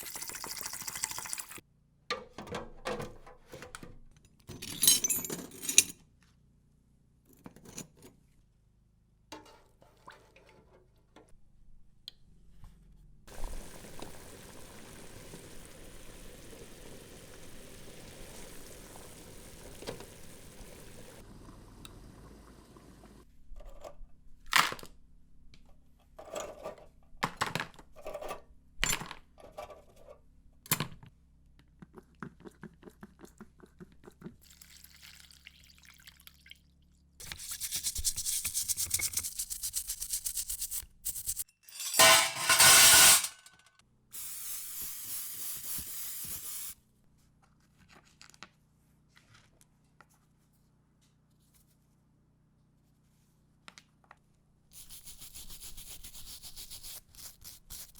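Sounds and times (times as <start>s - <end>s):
hissing spray bursts: 44.2s - 46.8s.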